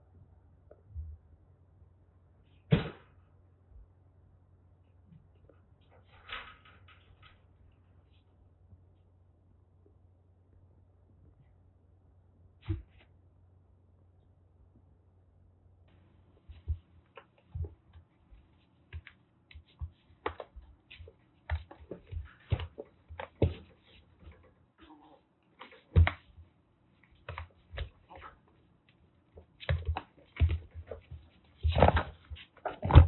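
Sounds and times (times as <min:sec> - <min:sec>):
thuds: 0:02.7 - 0:03.2
kittens scuffling on hard floor: 0:16.3 - 0:24.5, 0:29.4 - 0:33.0.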